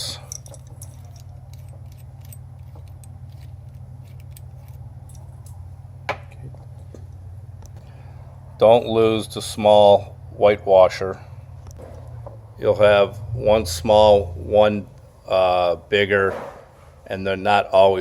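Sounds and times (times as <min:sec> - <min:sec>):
wrench clinking on hose fitting: 0:00.0 - 0:05.6
steady low hum: 0:00.0 - 0:18.0.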